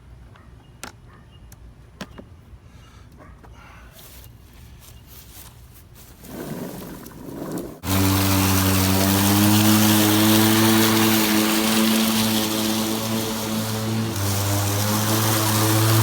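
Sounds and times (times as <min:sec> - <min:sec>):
electric lawn mower humming: 0:07.8 - 0:16.0.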